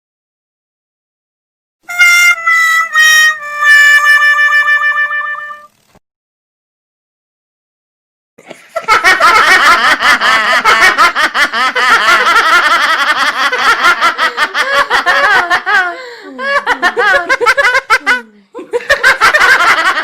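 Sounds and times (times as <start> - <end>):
many voices laughing: 8.4 - 20.0.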